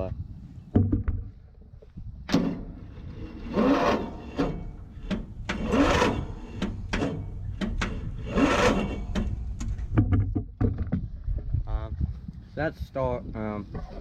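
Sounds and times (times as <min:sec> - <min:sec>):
electric starter cranking engine: 0:02.3 - 0:09.9.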